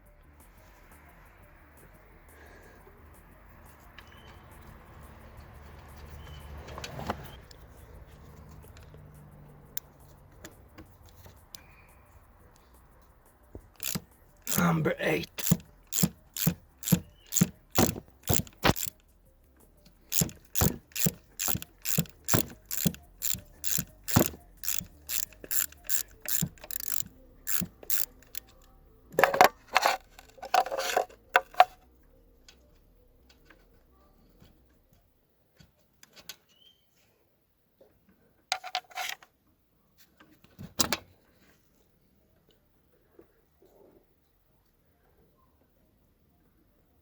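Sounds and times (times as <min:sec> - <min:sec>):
ratchet wrench clicking: 0:13.7 - 0:19.1, 0:20.1 - 0:28.7
metallic clatter of tools: 0:13.8 - 0:19.0, 0:20.1 - 0:28.6.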